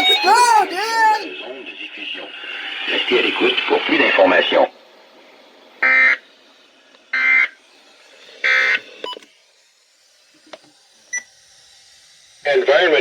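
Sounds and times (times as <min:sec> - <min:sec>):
data tone bursts: 0:05.8 - 0:06.2, 0:07.1 - 0:07.6, 0:08.4 - 0:09.3.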